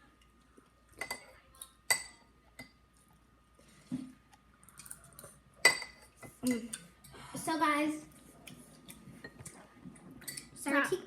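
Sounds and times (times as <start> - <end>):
spoons clinking against bowls: 1.0 - 2.8, 5.6 - 6.9, 10.2 - 10.6.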